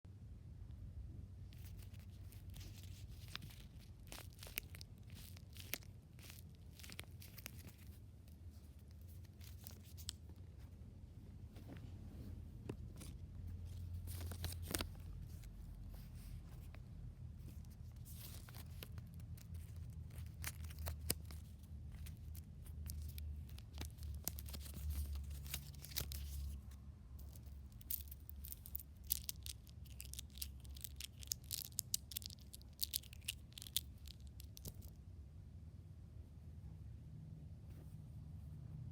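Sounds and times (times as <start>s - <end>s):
fidget toy crinkling: 1.5s - 10.6s, 12.8s - 16.8s, 17.4s - 35.0s.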